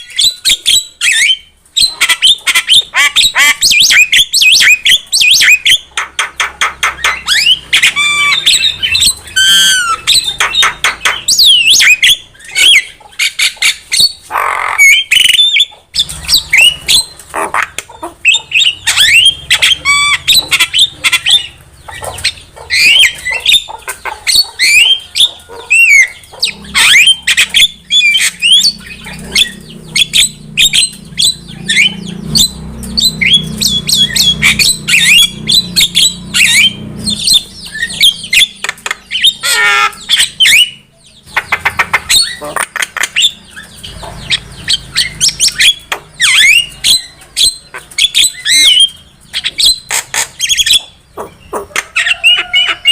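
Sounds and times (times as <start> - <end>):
myna bird singing: 0.0 - 52.9.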